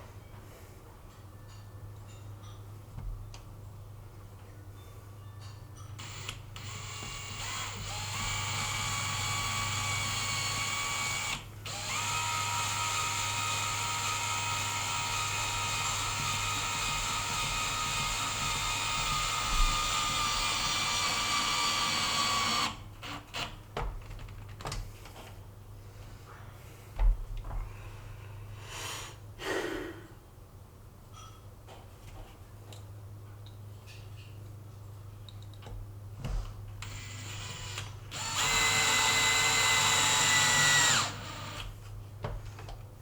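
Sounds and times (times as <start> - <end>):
power drill running: 6.0 - 23.4, 36.8 - 41.7.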